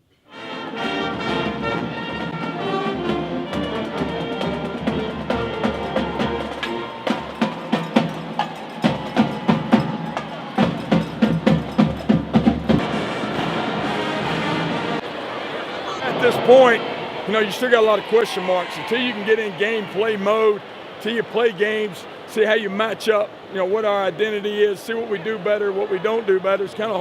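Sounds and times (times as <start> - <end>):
steady percussive beat: 0.7 - 14.6.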